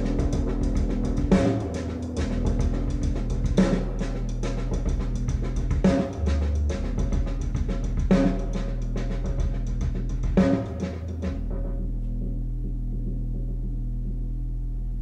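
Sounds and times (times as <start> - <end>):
fast drum ticks: 0.0 - 11.4
jazz piano trio over speakers: 0.0 - 15.0
sustained bass notes: 0.0 - 15.0.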